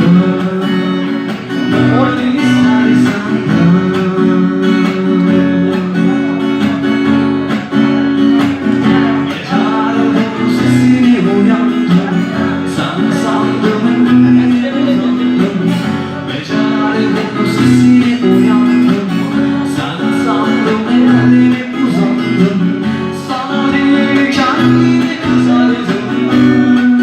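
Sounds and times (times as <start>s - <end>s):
acoustic guitar strummed: 0.0s - 27.0s.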